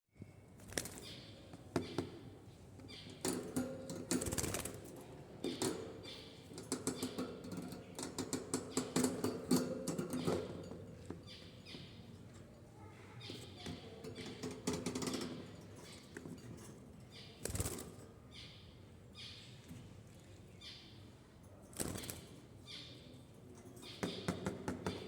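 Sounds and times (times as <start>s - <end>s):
budgerigars clicking and chattering: 5.5s - 12.3s, 13.2s - 16.4s.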